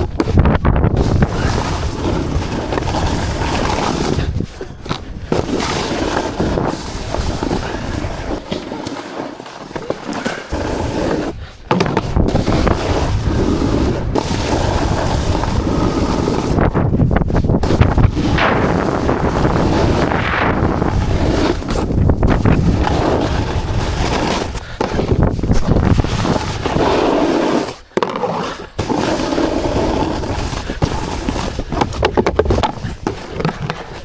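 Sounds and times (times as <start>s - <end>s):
wind rushing over microphone: 0.0s - 8.4s, 10.5s - 27.7s
edges scraping over hard snow: 0.0s - 34.0s.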